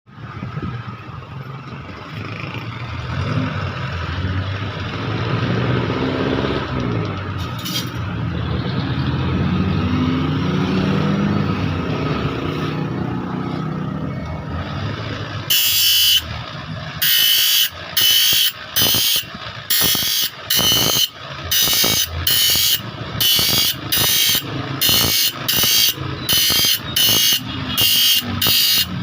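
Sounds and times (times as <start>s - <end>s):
motor running: 17.0s - 29.0s.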